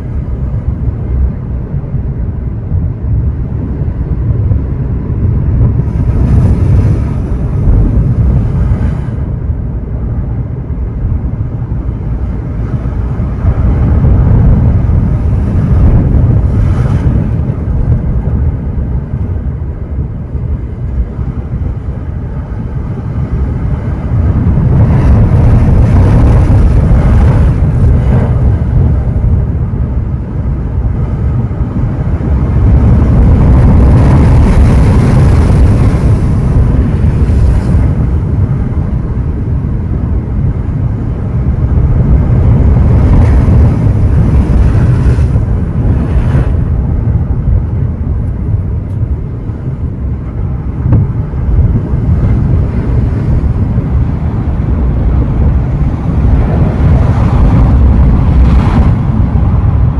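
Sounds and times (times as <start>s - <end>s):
deep wave rumble: 0.0s - 59.9s
ocean surf breaking: 4.8s - 9.5s, 20.3s - 59.9s.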